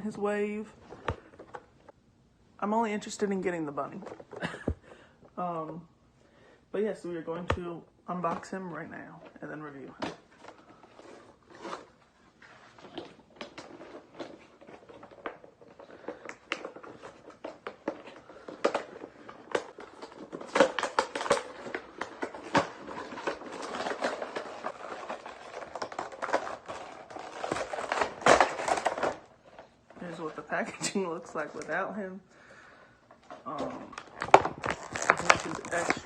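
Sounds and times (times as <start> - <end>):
plastic and cardboard packaging crinkling: 9.2 - 36.0.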